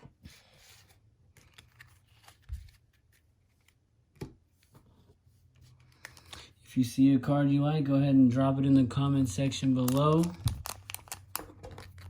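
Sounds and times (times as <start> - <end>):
trading cards rustling: 5.7 - 6.6, 9.4 - 12.0.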